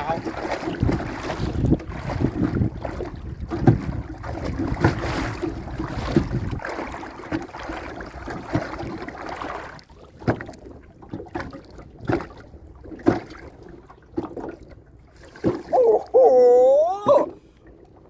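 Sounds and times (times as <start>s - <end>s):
wind buffeting microphone: 0.0s - 6.9s
water splashing: 0.0s - 17.9s.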